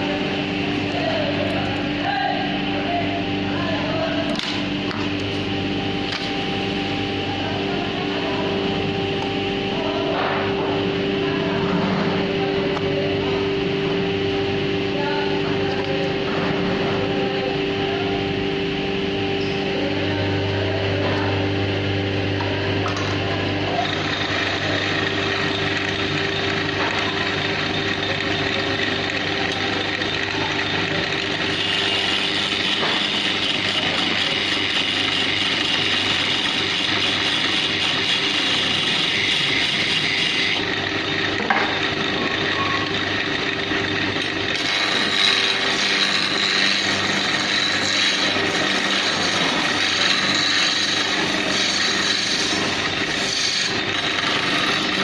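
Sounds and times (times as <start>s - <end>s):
lathe motor hum: 0.0s - 55.0s
turning tool scraping wood: 23.7s - 40.8s, 41.4s - 55.0s.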